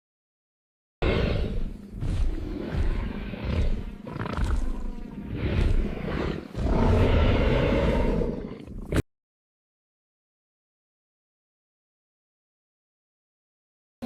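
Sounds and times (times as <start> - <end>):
deep rough dinosaur roars: 1.0 - 9.0.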